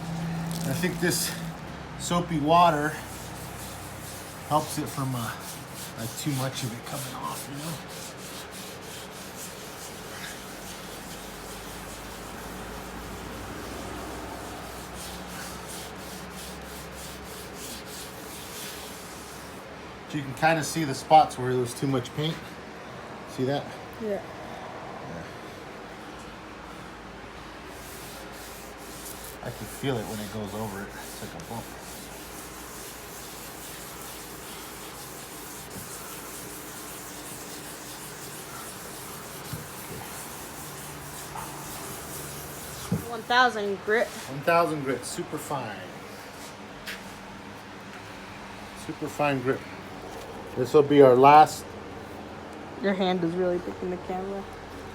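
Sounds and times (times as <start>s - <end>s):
sandpaper rubbing strokes: 0.0s - 19.7s, 27.7s - 47.2s.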